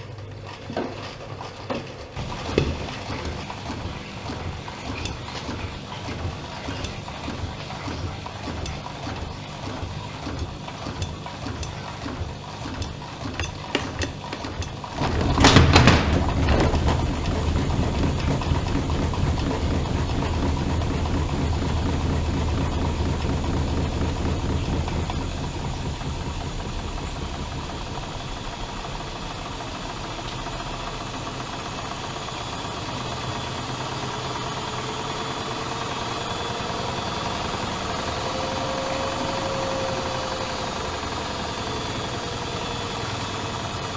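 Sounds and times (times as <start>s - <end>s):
washing machine hum: 0.0s - 43.9s
washing machine ticks and clicks: 0.0s - 43.9s
motor whine rising in pitch: 17.4s - 31.4s, 34.8s - 43.9s.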